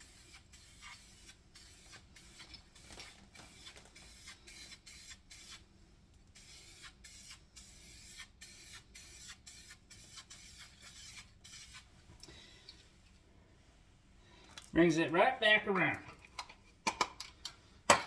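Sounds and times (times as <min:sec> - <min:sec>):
aerosol can spraying in short hisses: 0:00.0 - 0:05.6, 0:06.4 - 0:11.9.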